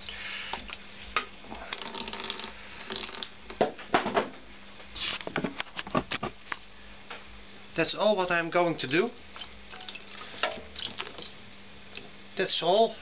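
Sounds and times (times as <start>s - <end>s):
rustling and scraping: 4.9s - 6.5s.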